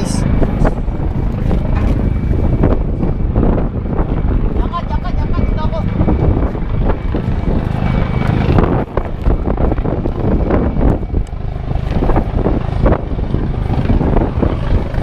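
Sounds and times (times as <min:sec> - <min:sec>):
helicopter rotors chopping: 0:00.0 - 0:15.0.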